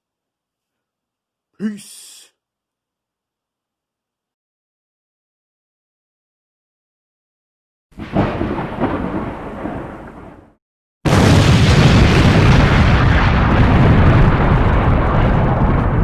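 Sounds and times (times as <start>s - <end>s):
explosion-like rumble: 8.0s - 16.0s.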